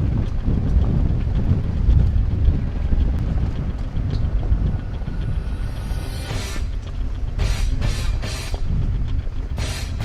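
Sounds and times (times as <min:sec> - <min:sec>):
background music: 0:03.9 - 0:10.0
swelling sweep: 0:04.3 - 0:08.6.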